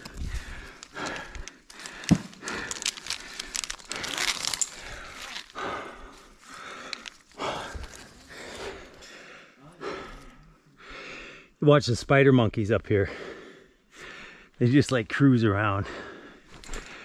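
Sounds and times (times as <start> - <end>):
rustling and scraping on tree trunk: 0.0 - 5.6.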